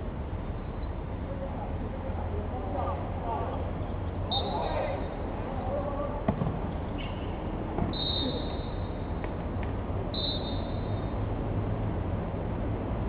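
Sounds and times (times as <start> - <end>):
background noise: 0.0 - 13.0
short high whistle blasts: 4.3 - 4.7, 7.9 - 9.0, 10.1 - 11.1.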